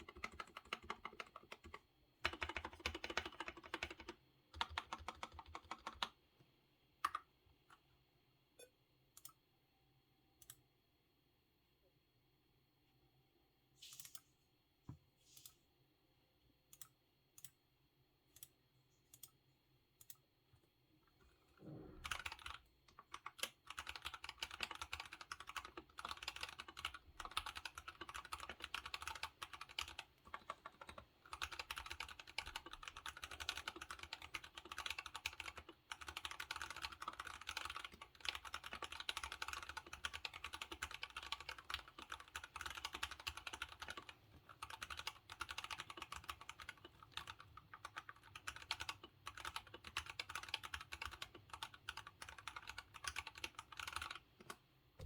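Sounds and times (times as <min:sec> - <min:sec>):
mechanical keyboard typing: 0:00.0 - 0:06.2, 0:21.4 - 0:54.6.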